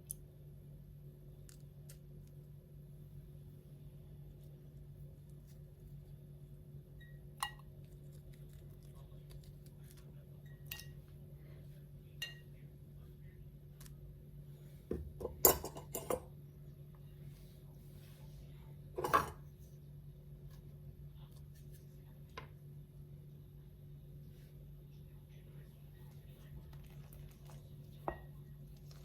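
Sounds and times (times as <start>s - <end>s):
steady low hum: 0.0s - 29.0s
glassware clinking: 12.2s - 12.5s.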